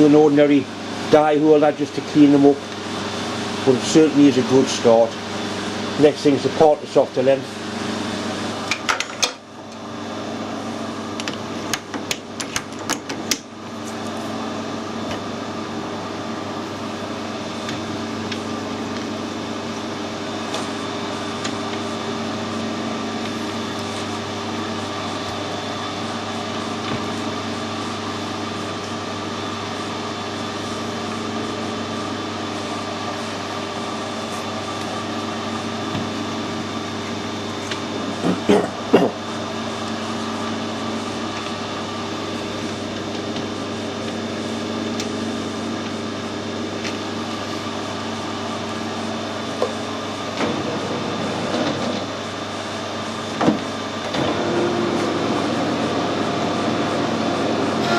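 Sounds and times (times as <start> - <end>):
metal lathe humming: 53.8 - 57.9.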